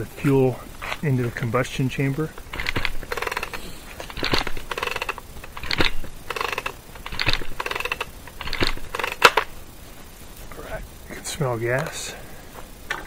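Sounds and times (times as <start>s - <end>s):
chainsaw recoil starter rope whirring: 2.3s - 9.6s.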